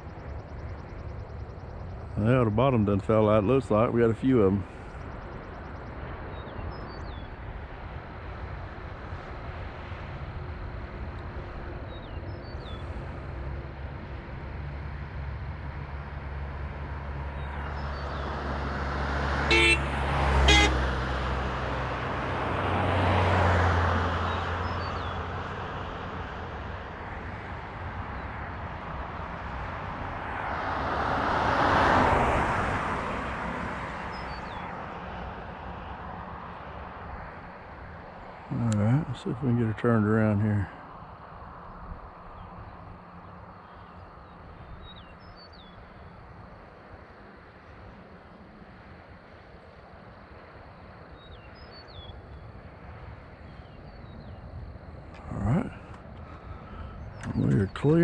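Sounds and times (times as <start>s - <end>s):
cars passing by: 0.0s - 58.0s
car horn: 19.4s - 21.0s.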